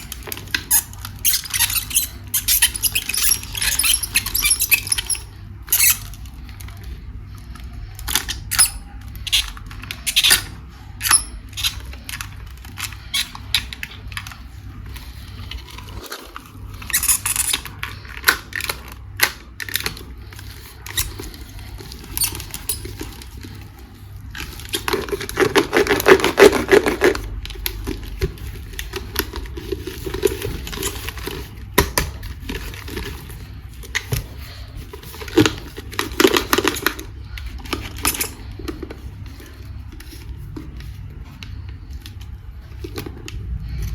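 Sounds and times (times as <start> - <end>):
packaging rustling: 11.1 - 43.4.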